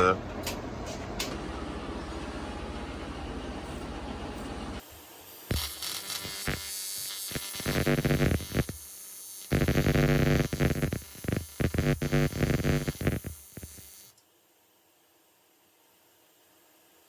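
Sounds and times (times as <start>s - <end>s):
welding arc buzzing and crackling: 4.8s - 14.2s.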